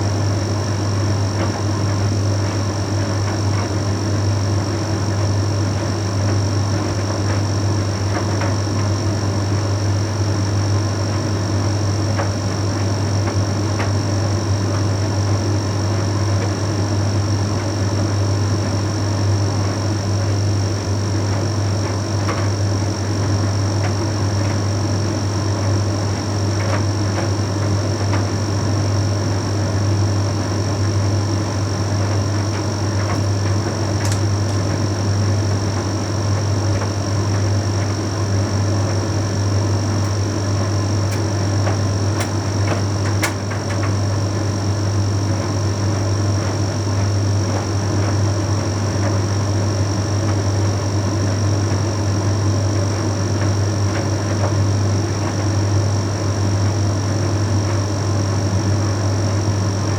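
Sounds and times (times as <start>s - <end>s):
tumble dryer running: 0.0s - 59.9s.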